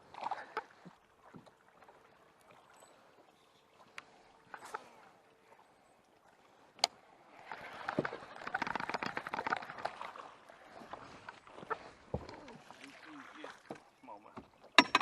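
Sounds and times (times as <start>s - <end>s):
water splashing: 0.0s - 15.0s.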